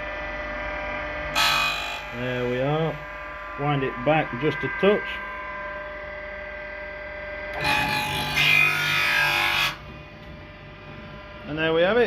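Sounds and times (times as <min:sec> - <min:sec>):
motor hum: 0:00.0 - 0:12.0
grinding wheel rasping on blade: 0:01.4 - 0:03.0, 0:07.6 - 0:09.8.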